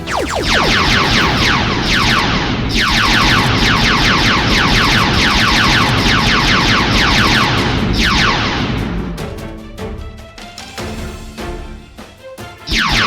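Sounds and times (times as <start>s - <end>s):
laser blaster zaps: 0.0s - 8.8s
low rumble: 7.5s - 9.5s.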